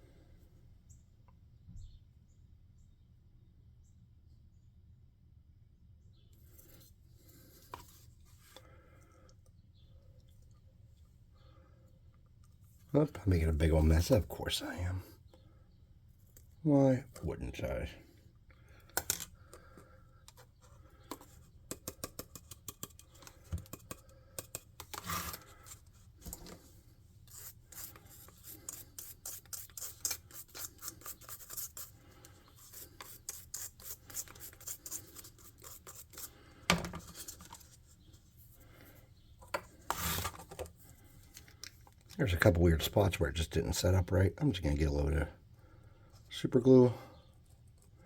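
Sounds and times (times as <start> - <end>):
small clicks and scratches: 18.9 - 42.4.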